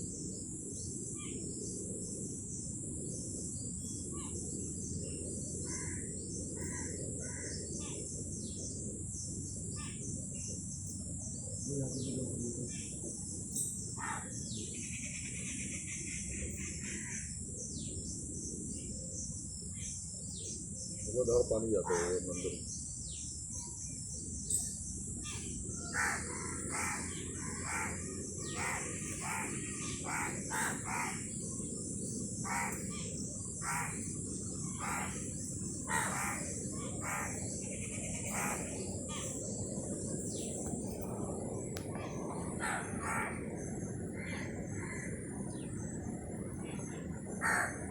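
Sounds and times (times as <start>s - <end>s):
steady high hiss: 0.0s - 47.9s
birds calling: 9.7s - 18.1s, 18.8s - 47.9s
low background rumble: 22.4s - 47.9s.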